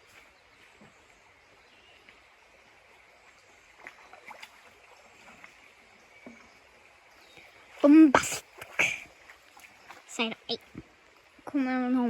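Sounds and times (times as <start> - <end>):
flowing water hiss: 0.0 - 12.0.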